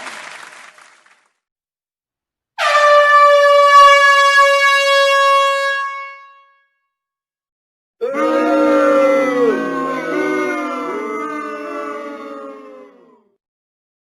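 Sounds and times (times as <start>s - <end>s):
air horn long blast: 2.6s - 6.7s.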